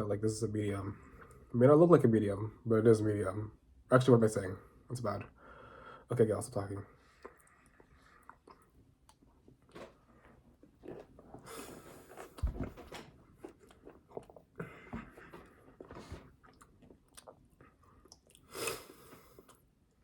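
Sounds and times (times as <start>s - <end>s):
chewing and biting food: 7.2s - 19.7s
wet mouth clicks: 16.5s - 19.6s.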